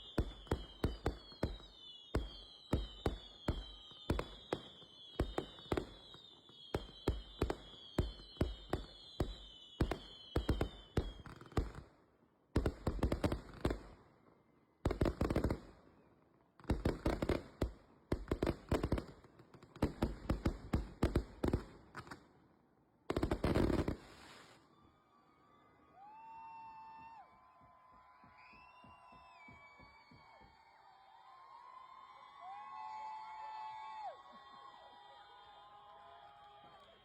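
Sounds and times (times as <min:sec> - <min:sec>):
firework whistle falling in pitch: 0:00.0 - 0:11.2, 0:24.2 - 0:31.0
fireworks bangs: 0:00.0 - 0:11.8, 0:23.1 - 0:24.9
crackling firework bursts: 0:00.0 - 0:11.9, 0:12.6 - 0:14.0, 0:14.9 - 0:22.4, 0:23.1 - 0:26.6.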